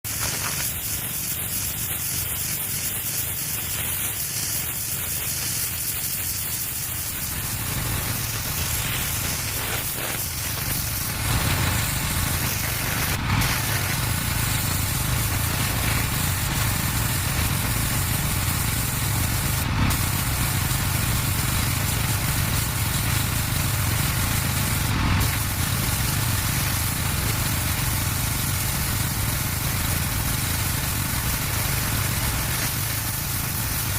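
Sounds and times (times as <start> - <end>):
high-pressure water jet hissing: 0.0 - 33.9
rapid high ticking: 0.1 - 24.3
pressure washer motor drone: 6.8 - 33.9.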